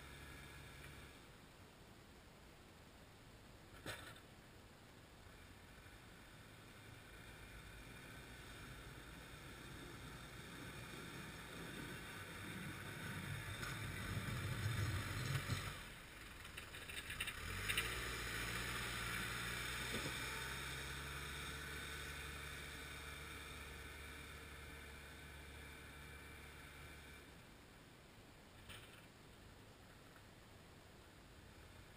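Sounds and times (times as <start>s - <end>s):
diesel loader engine: 0.0s - 1.3s, 5.4s - 27.4s
clatter: 3.8s - 4.3s, 7.0s - 24.4s, 28.6s - 29.1s.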